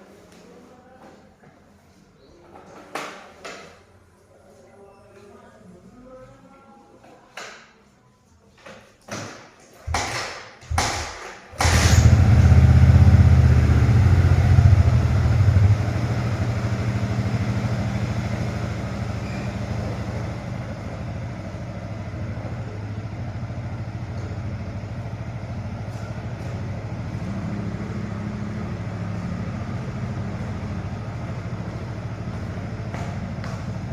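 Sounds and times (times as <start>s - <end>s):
motorcycle engine starting and idling: 11.5s - 33.9s.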